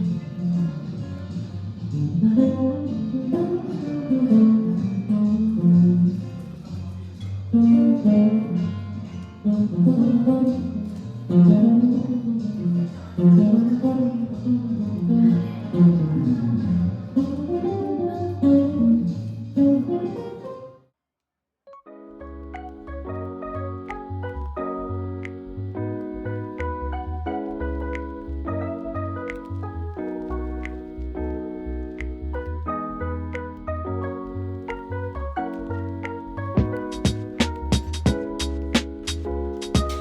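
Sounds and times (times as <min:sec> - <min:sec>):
picked guitar melody: 0:00.0 - 0:20.8, 0:21.8 - 0:40.0.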